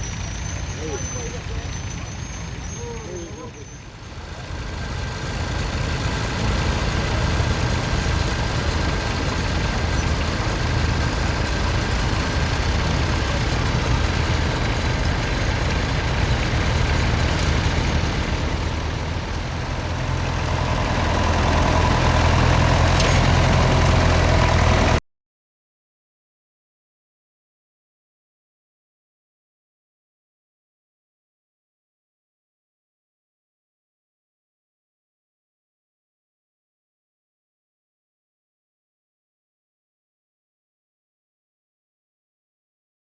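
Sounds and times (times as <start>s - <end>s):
tractor engine running: 0.0s - 25.0s.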